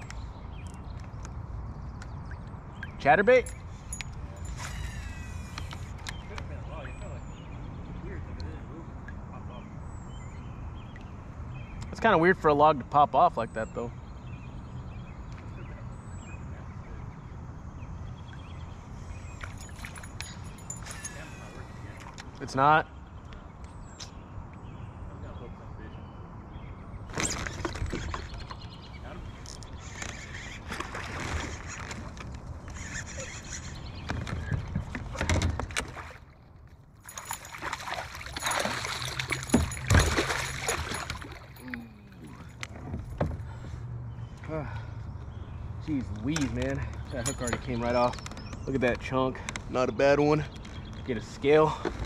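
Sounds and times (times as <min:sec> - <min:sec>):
bird chirps: 0:13.3 - 0:22.2, 0:43.4 - 0:49.0
water splashing and sloshing: 0:18.3 - 0:22.4, 0:27.0 - 0:33.1, 0:34.0 - 0:43.9
knocks against a kayak: 0:38.5 - 0:41.3.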